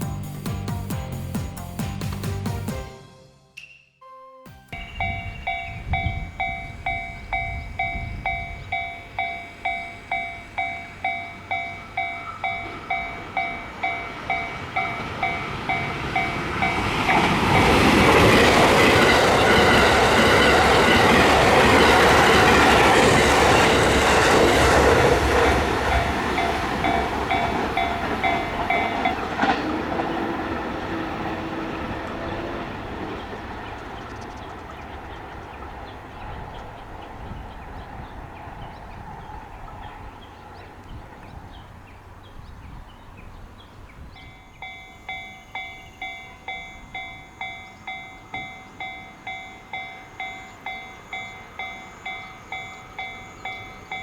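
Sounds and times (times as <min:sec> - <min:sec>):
level crossing warning bell: 0:04.7 - 0:29.6, 0:44.2 - 0:54.0
train passing with rushing rumble: 0:04.8 - 0:54.0.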